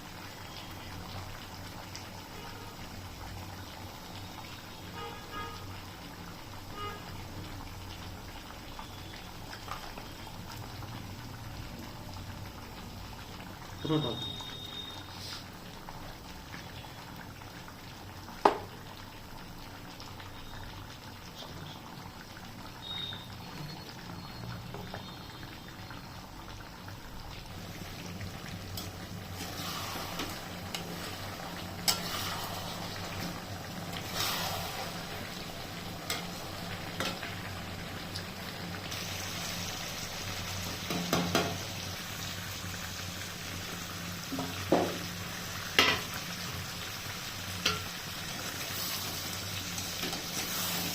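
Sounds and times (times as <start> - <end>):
food sizzling and bubbling in pan: 0.0 - 50.9.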